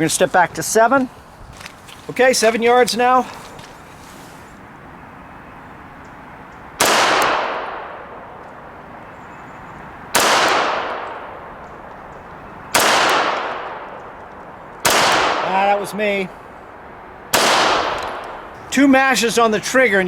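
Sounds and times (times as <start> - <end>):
pistol shots: 6.8 - 8.3, 10.1 - 11.8, 12.7 - 14.2, 14.8 - 15.8, 17.3 - 18.5.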